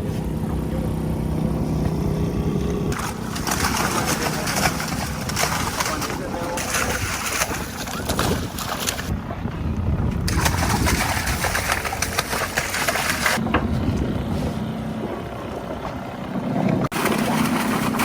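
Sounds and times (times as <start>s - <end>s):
boat engine running: 0.0s - 18.0s.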